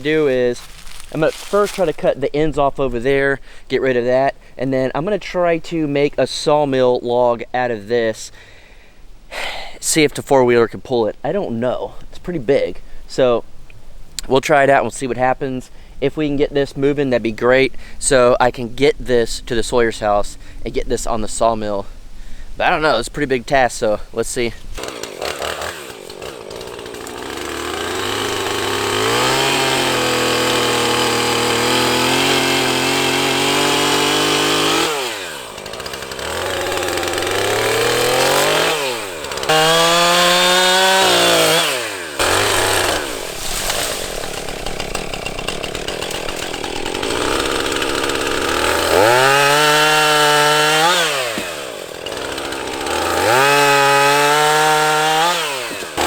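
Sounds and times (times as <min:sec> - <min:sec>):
chainsaw cutting and revving: 0:00.0 - 0:02.2, 0:24.8 - 0:56.0.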